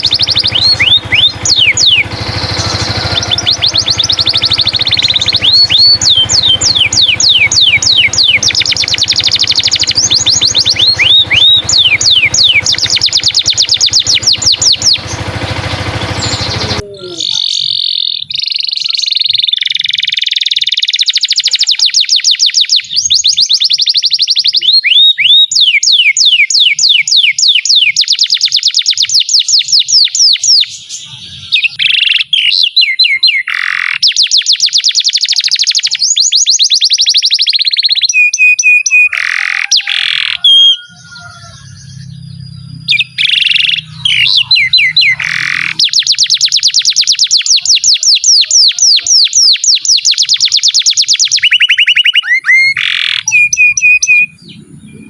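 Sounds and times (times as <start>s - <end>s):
low rumbling noise: 0.0s - 17.3s
canary singing trills: 0.0s - 55.0s.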